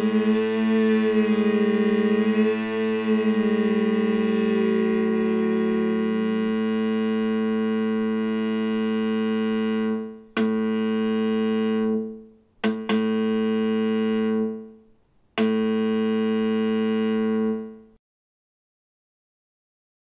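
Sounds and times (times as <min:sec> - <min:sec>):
bright synthesized tone: 0:00.0 - 0:14.8.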